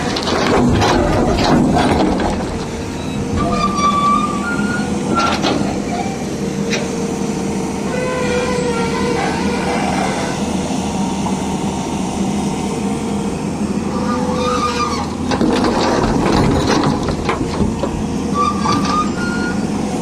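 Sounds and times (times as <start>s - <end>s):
diesel engine running under load: 0.0s - 20.0s
knocking and clattering: 15.3s - 18.1s.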